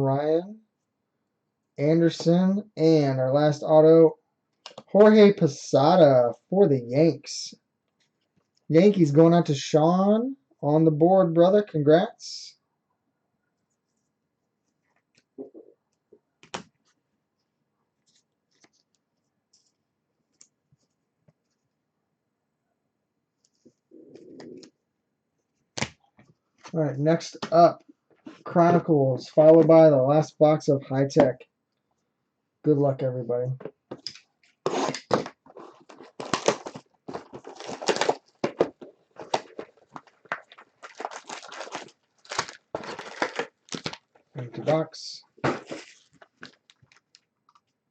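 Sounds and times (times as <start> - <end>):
plastic packaging rustling: 34.0 - 44.8, 45.4 - 47.3
plastic wrap crinkling: 34.4 - 44.7, 45.4 - 47.7
box being torn open: 34.6 - 44.0.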